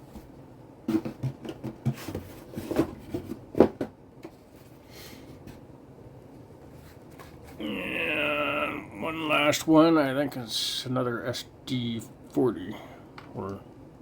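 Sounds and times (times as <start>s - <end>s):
handling knocks clicks and rustles: 0.0s - 4.5s.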